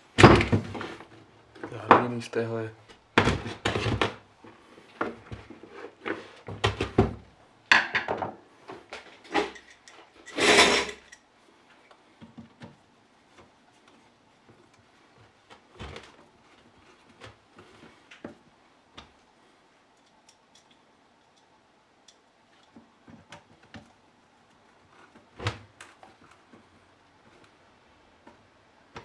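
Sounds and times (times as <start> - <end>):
light clicks and knocks of tools: 8.7 - 12.7, 19.8 - 23.9.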